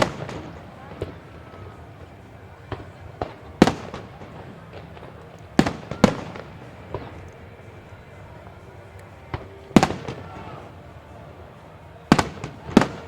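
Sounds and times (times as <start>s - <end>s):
fireworks bangs with echo: 0.0s - 13.0s.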